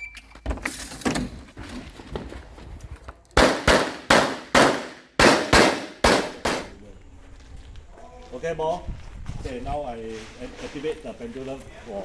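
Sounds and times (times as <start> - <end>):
pistol shots: 3.4 - 6.7.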